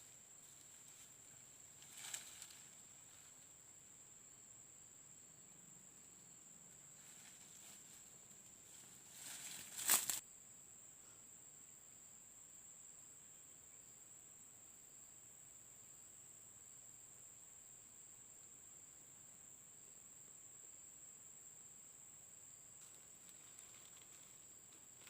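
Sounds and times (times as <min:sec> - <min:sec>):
rustling: 0:00.0 - 0:03.6, 0:06.9 - 0:10.2, 0:22.8 - 0:25.0.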